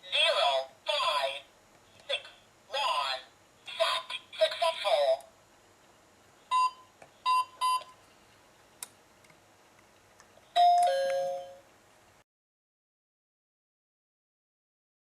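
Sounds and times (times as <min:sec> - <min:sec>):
short electronic beeps: 0:06.5 - 0:08.0
two-note ding-dong chime: 0:10.6 - 0:11.6.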